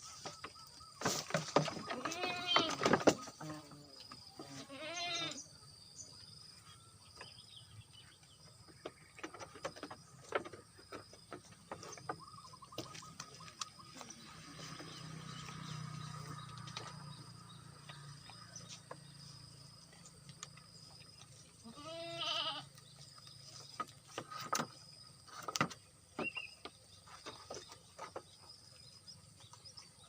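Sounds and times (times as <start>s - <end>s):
goat bleating: 1.9s - 2.8s, 4.5s - 5.4s, 21.6s - 22.7s.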